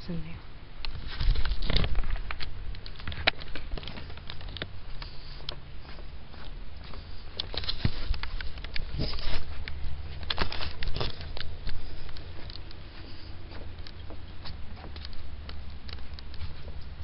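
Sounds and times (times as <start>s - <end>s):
steady low rumble: 0.0s - 17.0s
footsteps on dry leaves and twigs: 0.9s - 17.0s.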